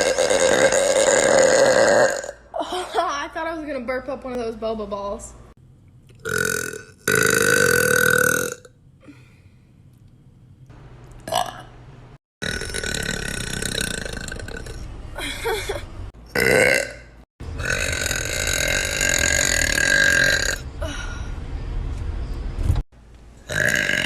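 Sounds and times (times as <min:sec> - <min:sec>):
loud burps: 0:00.0 - 0:02.5, 0:06.2 - 0:08.8, 0:11.2 - 0:11.7, 0:12.4 - 0:14.9, 0:16.2 - 0:20.7, 0:23.4 - 0:24.0.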